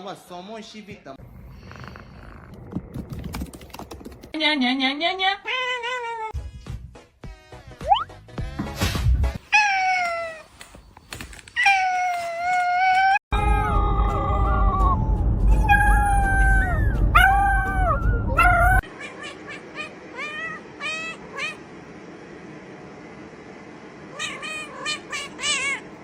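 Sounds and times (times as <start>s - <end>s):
low rumbling noise: 1.2s - 4.4s
cats meowing: 15.6s - 21.6s, 24.2s - 26.0s.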